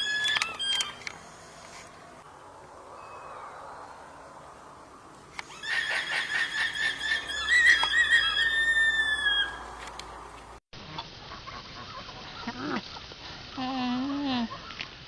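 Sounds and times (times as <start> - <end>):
alpaca high-pitched call: 6.5 - 9.7.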